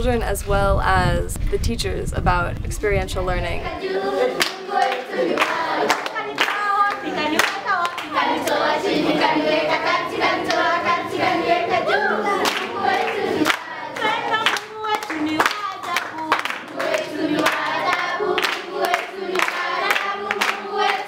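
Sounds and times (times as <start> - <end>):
group of voices singing: 3.5 - 21.0
hand claps: 4.4 - 8.6, 12.4 - 21.0.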